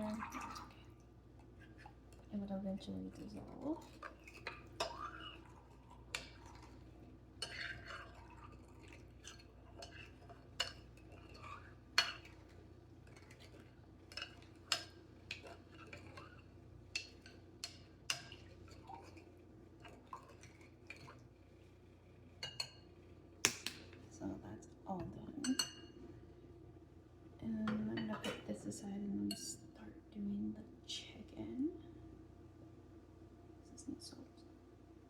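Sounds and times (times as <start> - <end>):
utensil stirring sauce: 0.0 - 21.8.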